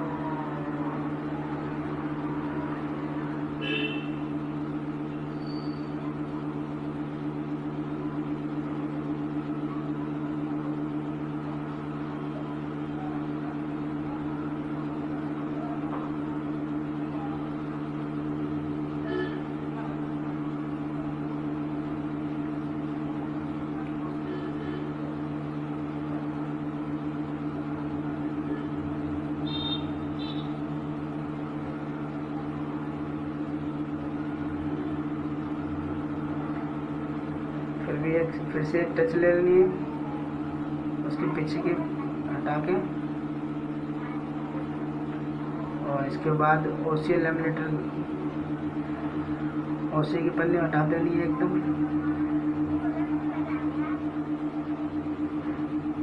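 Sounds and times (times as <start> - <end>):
steady electric hum: 0.0 - 56.0
faint short high chirps: 5.3 - 6.0.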